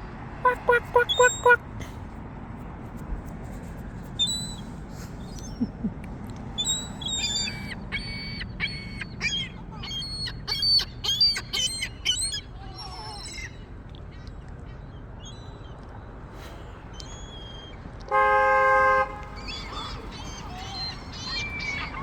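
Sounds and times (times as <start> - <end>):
gulls calling: 0.4 - 1.6, 6.6 - 13.6, 19.3 - 22.0.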